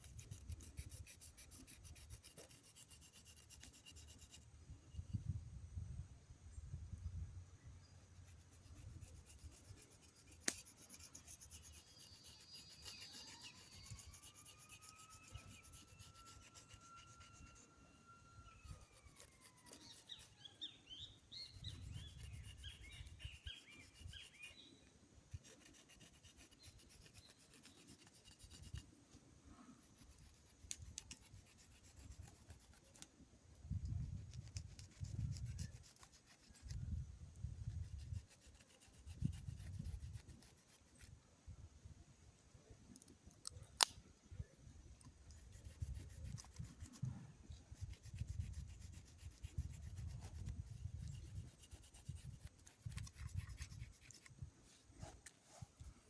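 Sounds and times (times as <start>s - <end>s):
knife carving wood: 0.0s - 4.4s, 8.2s - 17.6s, 18.4s - 24.7s, 25.3s - 28.8s, 29.8s - 33.1s, 33.8s - 41.2s, 45.0s - 54.4s
bird chirps: 11.7s - 16.3s, 16.9s - 24.8s
whistle-like tone: 12.4s - 19.0s.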